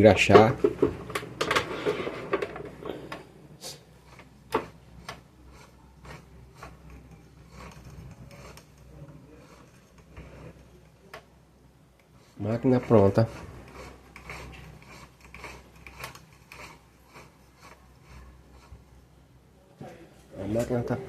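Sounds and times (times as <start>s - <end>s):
light rubbing of metal parts: 4.0s - 11.1s, 12.1s - 19.0s.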